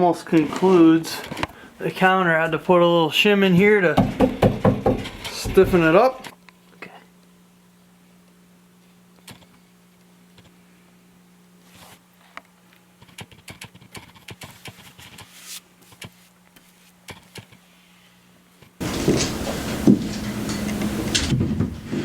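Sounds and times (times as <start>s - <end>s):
steady low hum: 18.8s - 22.0s.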